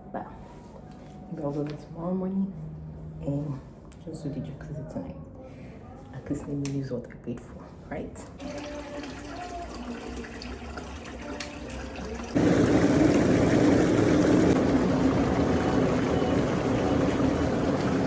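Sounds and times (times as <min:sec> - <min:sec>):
hot tub jets switching on: 0:11.2 - 0:18.0
bubbling water churning: 0:11.7 - 0:18.0.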